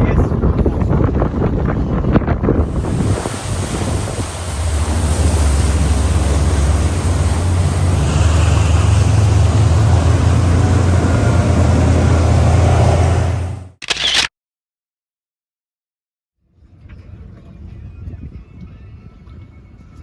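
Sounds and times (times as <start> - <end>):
rushing wind: 0.0 - 13.7
boat engine droning: 0.0 - 13.8
water noise: 0.0 - 13.8.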